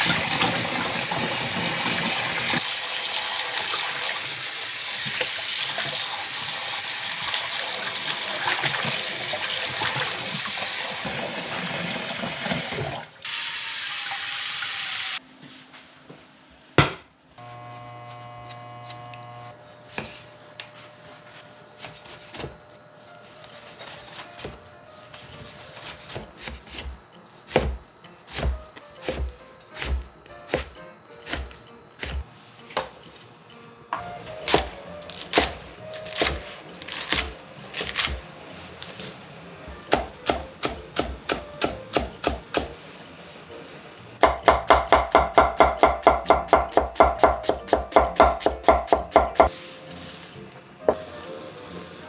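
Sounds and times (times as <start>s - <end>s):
knife chopping on cutting board: 16.8s - 17.1s, 19.8s - 20.2s, 25.2s - 32.2s, 34.4s - 38.2s, 39.9s - 42.8s, 44.2s - 49.6s.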